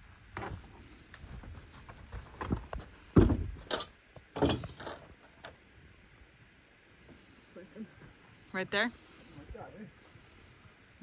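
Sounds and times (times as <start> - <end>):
knocks and clunks: 2.1 - 5.0.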